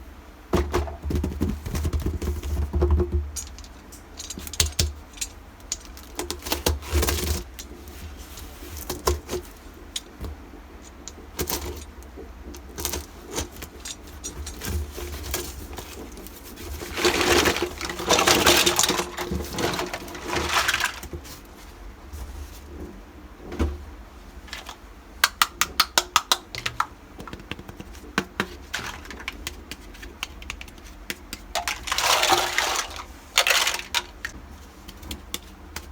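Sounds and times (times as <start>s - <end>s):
rustling: 12.6s - 23.0s.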